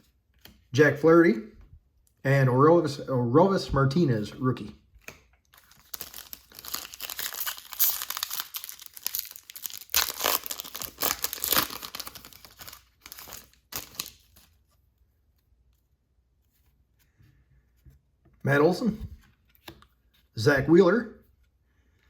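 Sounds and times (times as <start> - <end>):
wrapper tearing and crinkling: 5.5 - 14.5.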